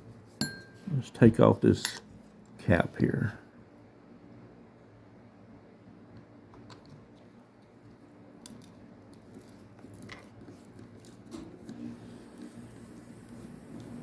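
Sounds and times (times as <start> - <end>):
faint clicks of small parts: 6.2 - 11.8.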